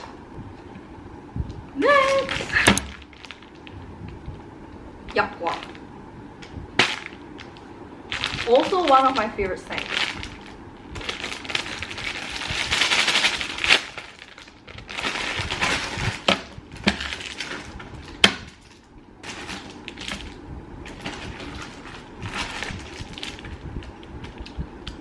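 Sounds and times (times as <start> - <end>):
snack packaging rustling: 6.9 - 25.0.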